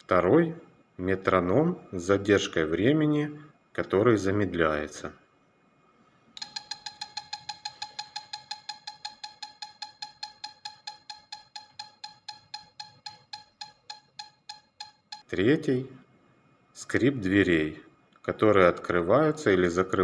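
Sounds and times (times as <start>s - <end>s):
electronic metronome clicking: 6.4s - 15.3s.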